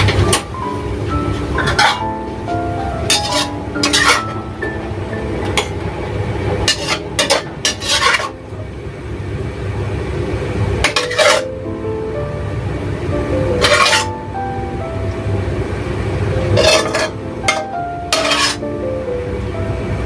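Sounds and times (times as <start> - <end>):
background music: 0.0 - 8.7, 10.9 - 20.0
metal utensil clinking cookware: 3.1 - 4.3, 6.6 - 8.3, 13.6 - 14.1, 16.6 - 18.6.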